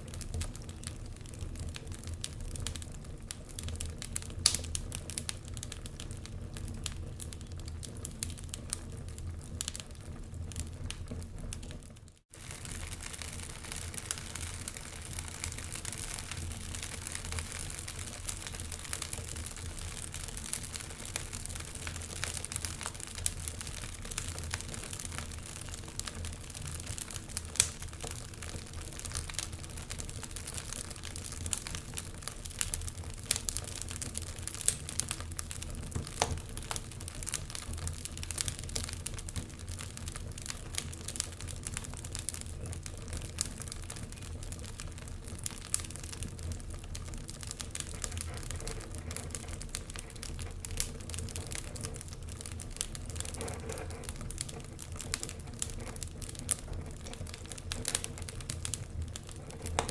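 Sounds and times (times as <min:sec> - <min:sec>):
fire popping and snapping: 0:00.0 - 0:59.9
low rumble of flames: 0:00.0 - 0:59.9.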